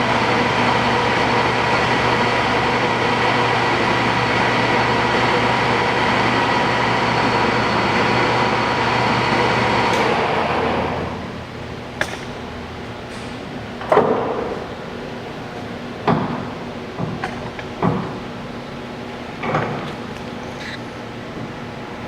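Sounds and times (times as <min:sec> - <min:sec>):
lathe motor humming: 0:00.0 - 0:11.5.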